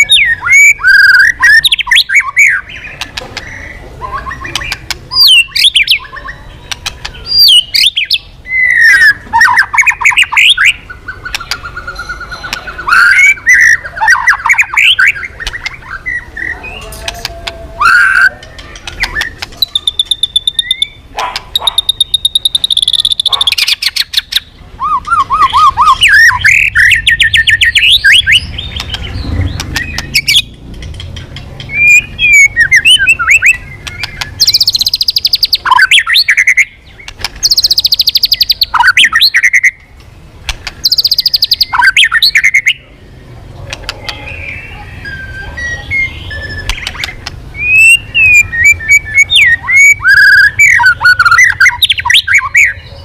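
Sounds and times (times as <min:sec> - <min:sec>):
bird singing trills and whistles: 0:00.0 - 0:39.9, 0:40.6 - 0:42.9, 0:43.7 - 0:53.0.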